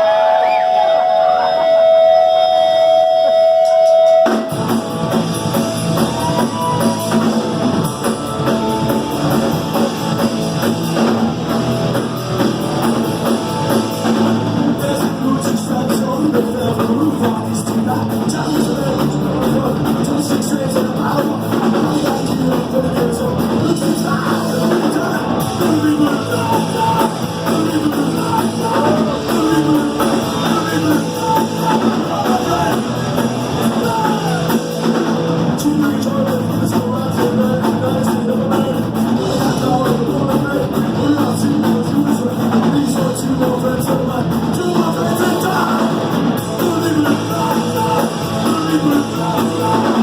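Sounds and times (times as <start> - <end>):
distorted electric guitar: 0.0 - 50.0
drum kit: 0.0 - 50.0
person singing: 13.0 - 50.0.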